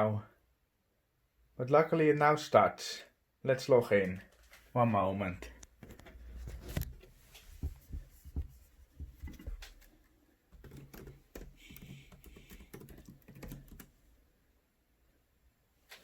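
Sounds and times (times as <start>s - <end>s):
keyboard typing clicks: 10.6s - 13.9s.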